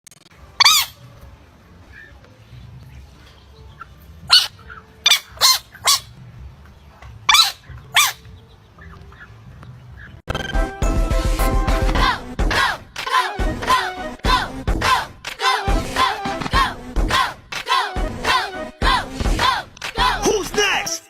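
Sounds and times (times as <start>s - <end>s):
music: 0.3s - 7.1s, 10.3s - 21.0s
dog barking: 4.3s - 6.1s, 7.3s - 8.2s.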